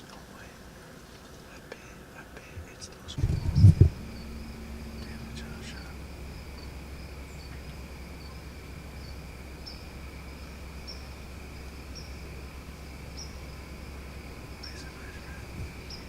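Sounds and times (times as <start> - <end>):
crickets droning: 0.0 - 16.0
low steady rumble: 1.4 - 16.0
short high insect chirp: 3.2 - 16.0.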